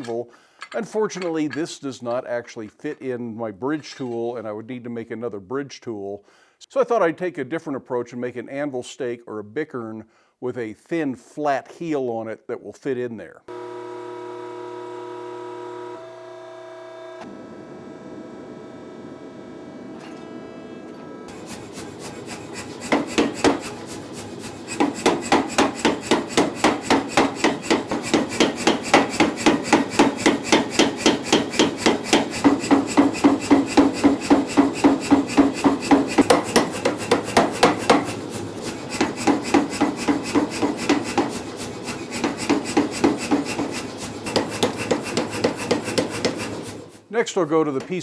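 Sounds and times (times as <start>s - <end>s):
power hammer striking steel: 21.3s - 46.8s.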